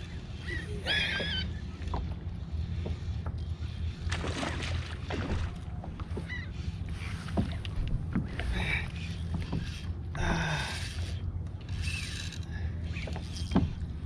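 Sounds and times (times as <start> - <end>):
water splashing: 4.0 - 5.8.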